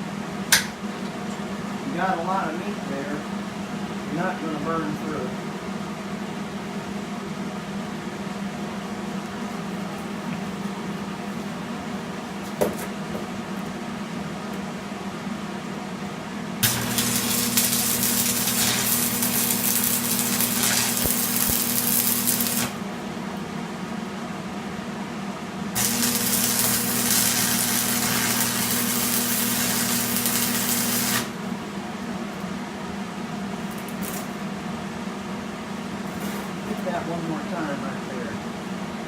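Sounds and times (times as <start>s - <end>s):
low electrical hum: 0.0s - 39.0s
arc welder crackling hiss: 16.6s - 22.9s, 25.7s - 31.6s, 33.7s - 34.4s, 35.9s - 37.2s.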